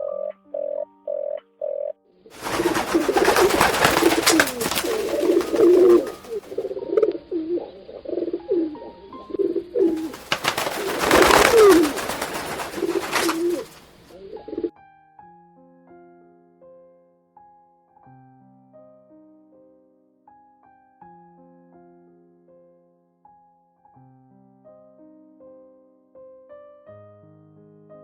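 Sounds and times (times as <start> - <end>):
rustling clattering hiss: 2.4 - 6.7, 9.8 - 14.2
croaking pulses: 2.4 - 8.7, 9.8 - 14.1
pigeons cooing: 2.4 - 14.7.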